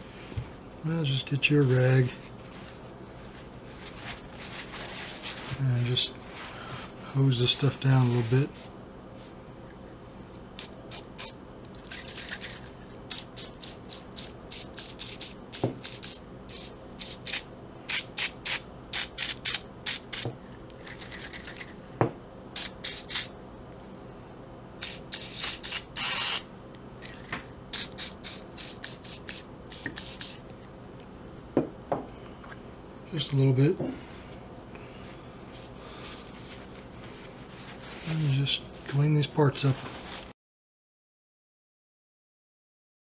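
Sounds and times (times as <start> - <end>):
aerosol can spraying: 13.1 - 20.3, 24.8 - 26.4, 27.7 - 30.4.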